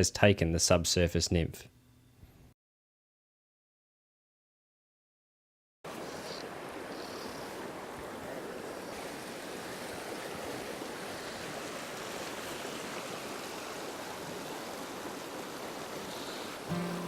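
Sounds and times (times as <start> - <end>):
stream water running: 5.9 - 17.0.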